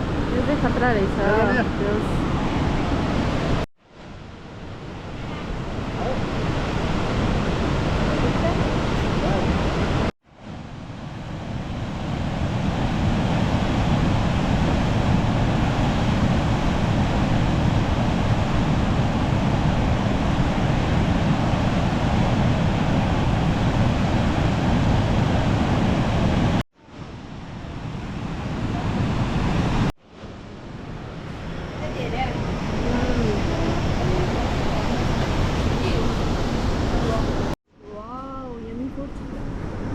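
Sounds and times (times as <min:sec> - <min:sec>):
waterfall rushing: 0:30.9 - 0:37.6.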